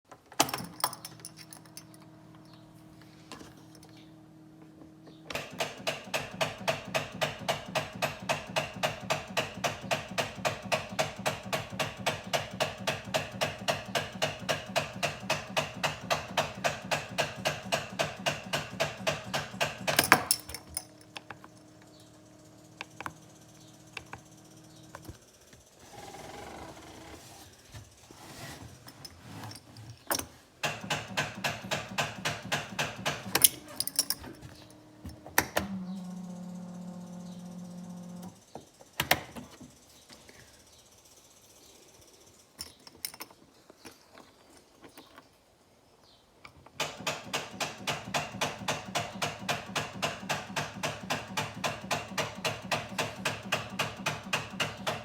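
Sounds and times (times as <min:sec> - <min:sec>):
engine cranking clatter: 0:28.8 - 0:34.8.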